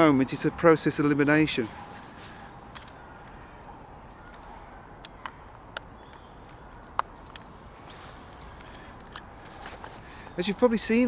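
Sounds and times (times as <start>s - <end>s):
steady outdoor hiss: 0.0s - 11.0s
small bird chirping: 3.2s - 4.5s, 5.9s - 10.6s
sharp clicks: 4.2s - 7.5s.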